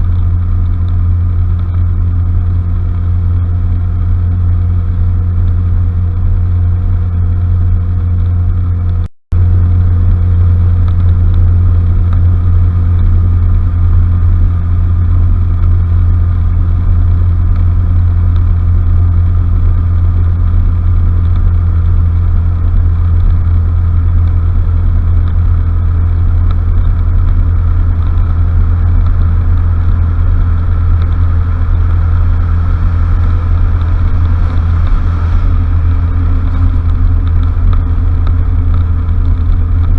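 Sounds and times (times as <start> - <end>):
scooter engine humming: 0.0 - 39.9.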